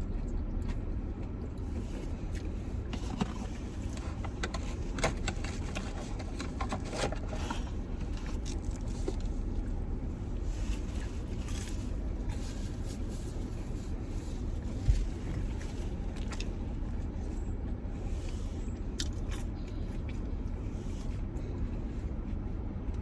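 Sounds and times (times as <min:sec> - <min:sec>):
steady low hum: 0:00.0 - 0:23.0
chewing: 0:18.2 - 0:23.0.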